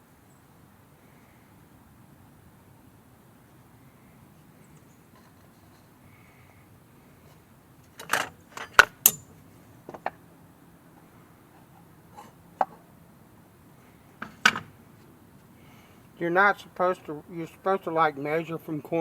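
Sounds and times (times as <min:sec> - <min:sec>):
tools clinking on workbench: 0:08.0 - 0:09.3.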